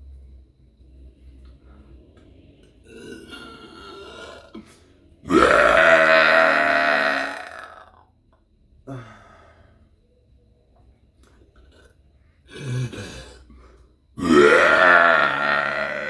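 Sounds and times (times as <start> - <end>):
woman burping: 2.9 - 4.7, 5.3 - 8.0, 12.5 - 13.5, 14.2 - 16.0.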